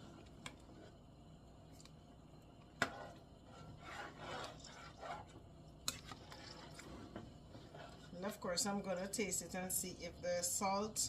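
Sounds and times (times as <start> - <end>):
spoon scraping pot: 2.8 - 8.4.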